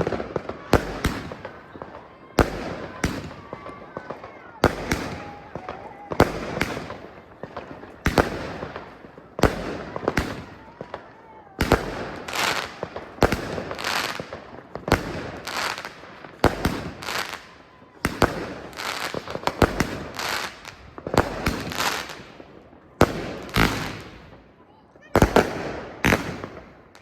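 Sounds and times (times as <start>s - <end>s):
firework launch shots: 11.6s - 24.4s, 25.2s - 26.8s
hissing firework tails: 11.6s - 24.5s.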